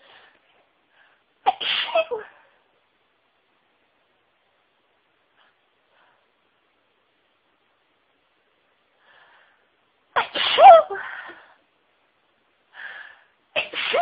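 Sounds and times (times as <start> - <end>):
person sneezing: 1.5 - 2.4, 10.2 - 11.2, 13.6 - 14.0.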